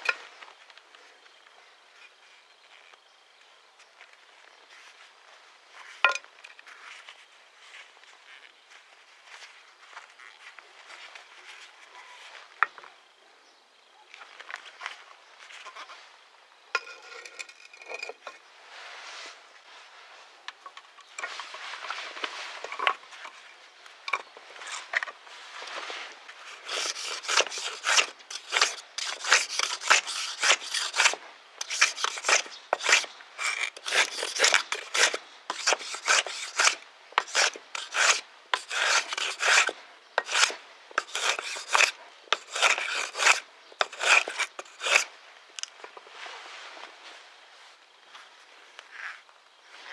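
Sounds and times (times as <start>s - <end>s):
hand plane rasping on board: 26.6s - 45.1s.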